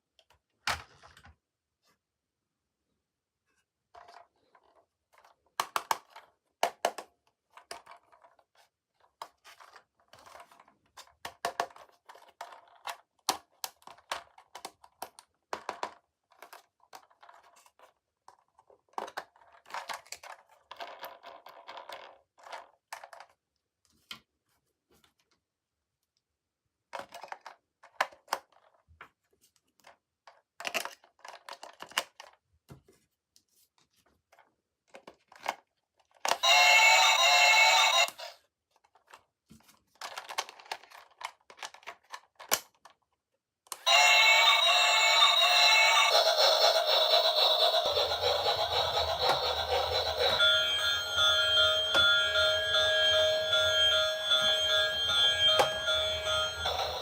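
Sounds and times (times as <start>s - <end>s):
sharp clicks and taps of toys: 5.6s - 7.8s.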